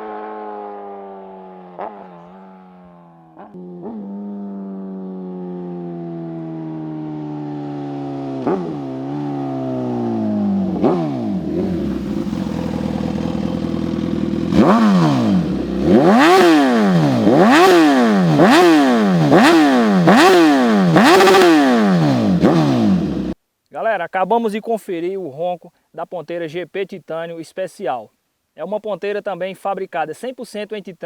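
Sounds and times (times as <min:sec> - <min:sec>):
motorcycle engine idling and revving: 0:00.0 - 0:23.4.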